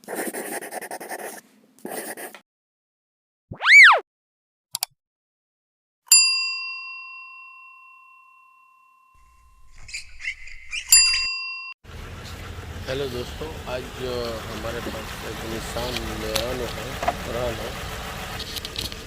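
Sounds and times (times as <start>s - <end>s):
whistle-like swoop: 3.5s - 4.0s
bell ding: 6.1s - 9.5s, 11.0s - 11.8s.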